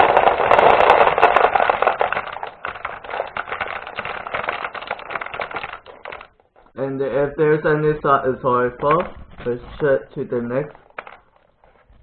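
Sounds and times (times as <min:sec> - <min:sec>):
marbles pouring and rattling: 0:00.0 - 0:06.4, 0:10.5 - 0:11.9.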